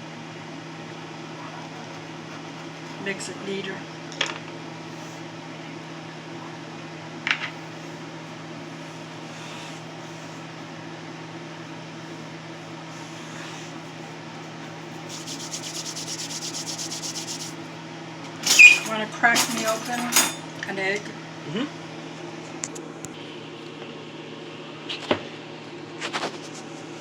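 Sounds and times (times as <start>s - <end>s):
background hum: 0.0s - 27.0s
knife scraping pie dough: 12.8s - 17.6s.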